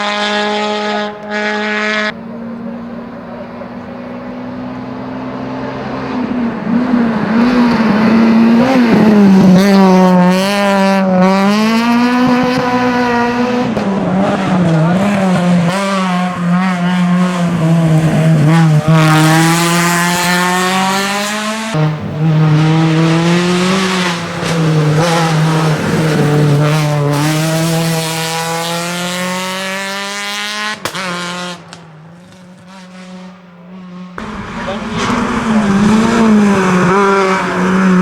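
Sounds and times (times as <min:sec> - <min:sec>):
rally car engine at full throttle: 0:00.0 - 0:38.0
sharp crack: 0:30.4 - 0:33.4.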